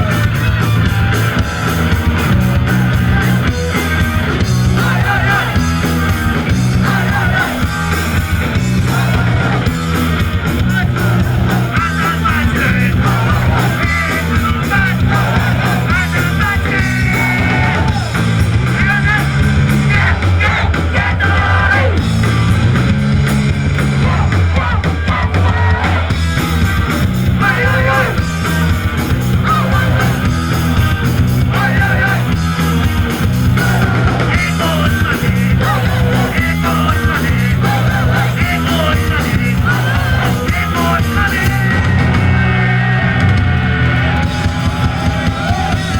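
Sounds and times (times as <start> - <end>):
punk rock band playing: 0.0 - 45.9
person shouting singing: 4.7 - 5.7, 6.6 - 8.0, 8.7 - 9.8, 10.6 - 18.2, 18.8 - 22.0, 24.0 - 26.1, 27.3 - 30.2, 31.4 - 32.4, 33.5 - 45.9.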